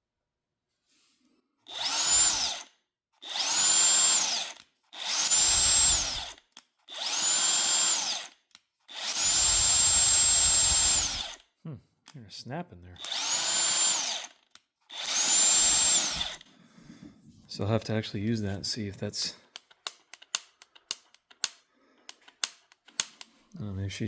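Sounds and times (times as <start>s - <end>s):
impact wrench whining and hammering: 1.7s - 11.5s, 13.0s - 16.6s, 19.5s - 23.3s.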